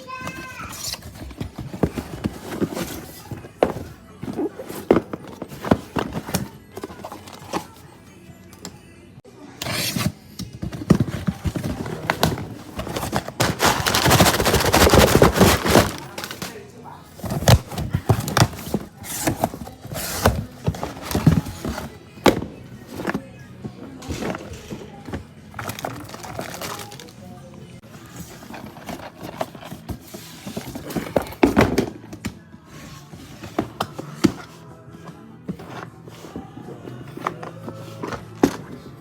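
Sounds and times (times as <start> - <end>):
boxes knocking and thumping: 0.0 - 7.8, 10.0 - 16.5, 17.1 - 27.1, 28.1 - 32.4
cardboard boxes knocking: 0.8 - 7.8, 10.4 - 16.4
packing material rustling: 10.8 - 16.5.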